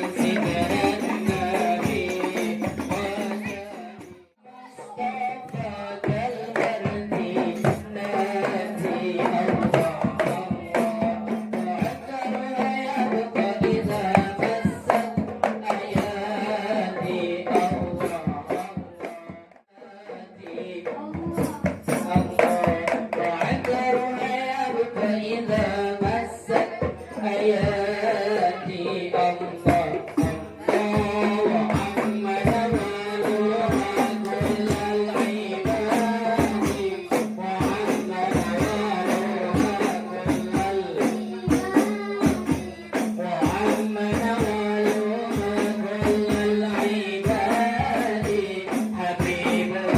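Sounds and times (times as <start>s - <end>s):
frame drums playing quick rhythm: 0.0s - 49.9s
voices singing: 0.0s - 49.9s.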